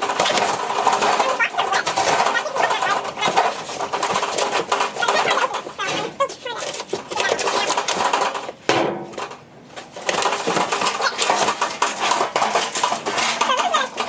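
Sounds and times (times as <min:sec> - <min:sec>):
metal garbage cans clanking: 0:00.0 - 0:14.0.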